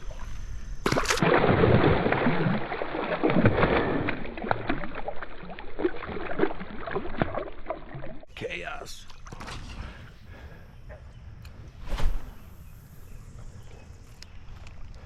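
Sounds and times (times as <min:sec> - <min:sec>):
water splashing and gurgling: 0:00.0 - 0:09.6.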